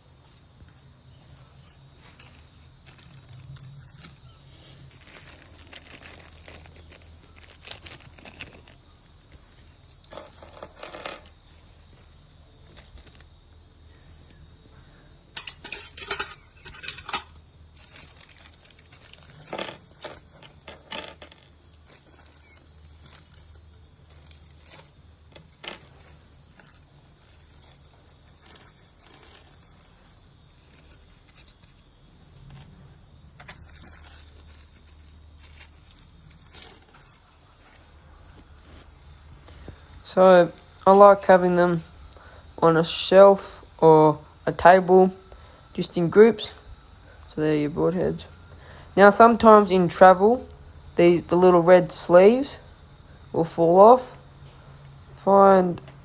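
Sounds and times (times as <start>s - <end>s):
small metal parts clicking: 15.4s - 23.5s.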